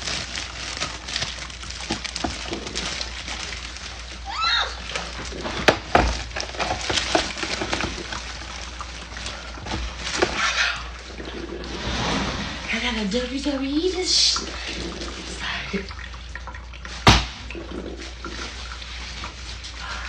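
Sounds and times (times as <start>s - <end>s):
liquid sloshing: 0.0s - 20.0s
sharp knock: 17.1s - 17.4s.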